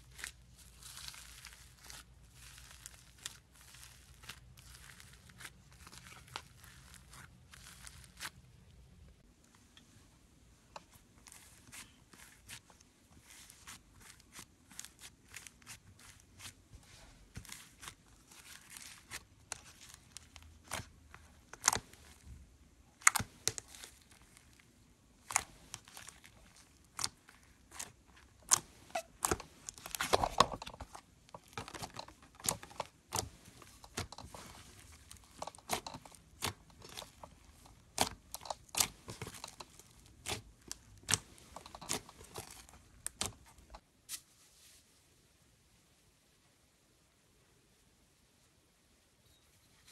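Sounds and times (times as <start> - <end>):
foam slime crackling and popping: 0.0 - 8.3, 25.2 - 43.8.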